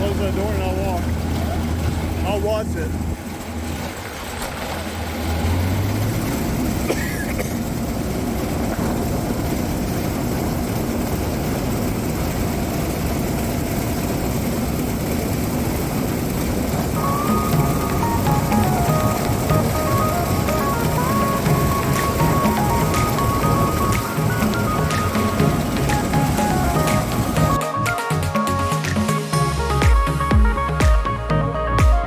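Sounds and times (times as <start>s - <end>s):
heavy engine rumbling: 0.0s - 31.8s
low steady hum: 7.8s - 27.6s.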